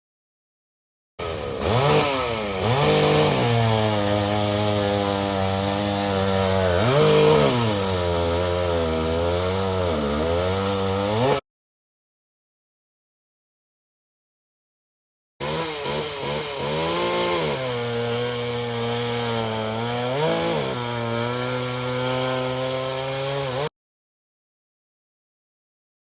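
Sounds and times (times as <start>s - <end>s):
chainsaw engine revving: 1.2s - 11.4s, 15.4s - 23.7s.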